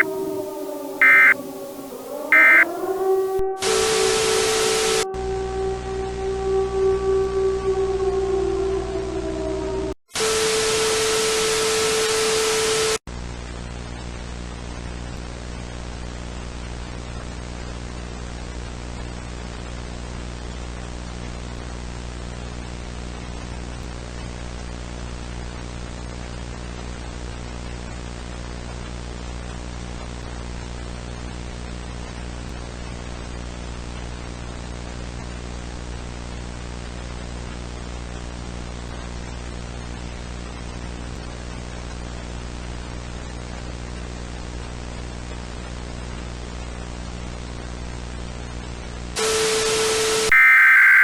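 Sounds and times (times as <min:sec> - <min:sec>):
static hiss: 0:00.0 - 0:05.0, 0:10.2 - 0:13.0, 0:49.2 - 0:51.0
low buzzing hum: 0:00.0 - 0:10.4.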